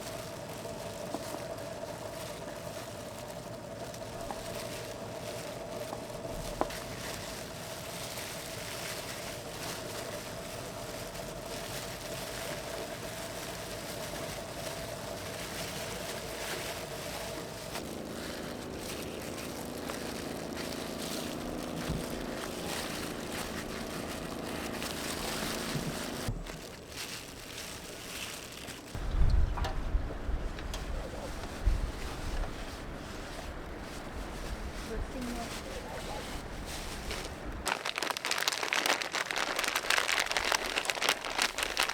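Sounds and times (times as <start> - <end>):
motor hum: 9.3 - 27.2.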